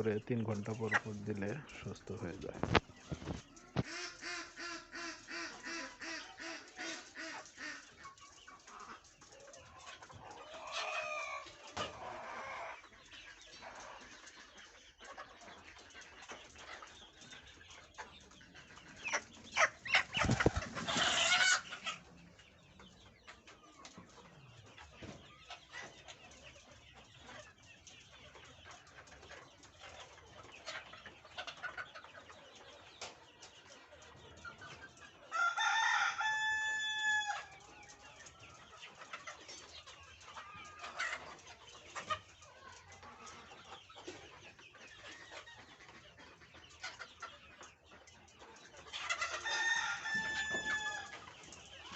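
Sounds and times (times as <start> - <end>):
chickens clucking: 0.0 - 51.9
rooster crowing: 49.5 - 51.1.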